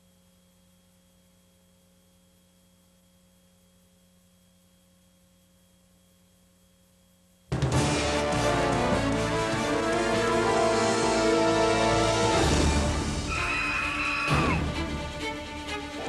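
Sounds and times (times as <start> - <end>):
tape hum and hiss: 0.0 - 13.4
loud music: 7.6 - 16.0.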